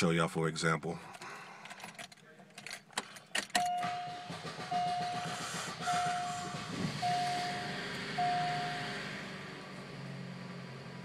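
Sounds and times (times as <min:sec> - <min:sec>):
car engine cranking and idling: 0:00.9 - 0:11.0
dashboard warning chime beeps: 0:03.6 - 0:08.9.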